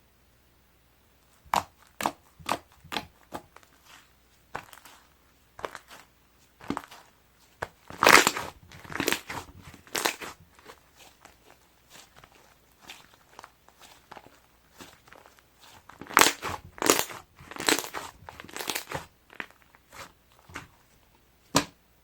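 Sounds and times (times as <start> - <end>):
slime being squeezed: 5.6 - 20.7.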